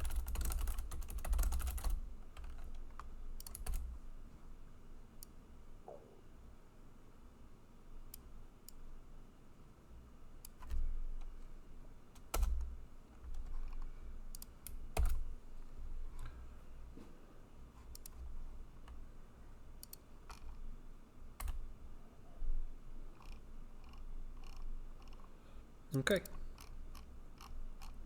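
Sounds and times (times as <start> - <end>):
computer keyboard typing: 0.0 - 3.9, 12.2 - 12.7, 13.3 - 15.3, 19.8 - 20.6, 21.4 - 21.6, 23.1 - 25.3, 26.2 - 28.0.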